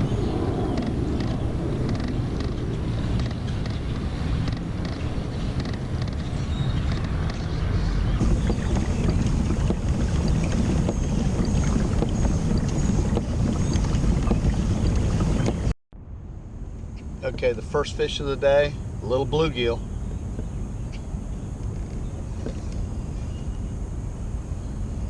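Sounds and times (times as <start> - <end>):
wind buffeting microphone: 0.0 - 15.7.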